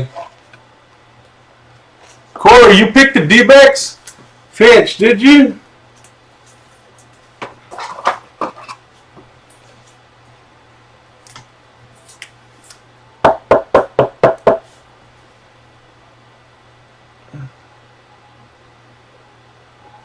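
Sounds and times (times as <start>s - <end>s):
sharp knocks on a hard surface: 13.2s - 14.6s.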